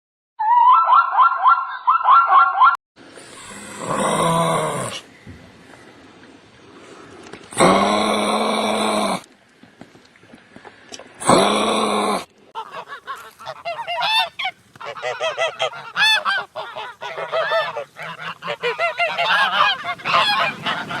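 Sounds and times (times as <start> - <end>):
geese honking: 12.6 - 21.0.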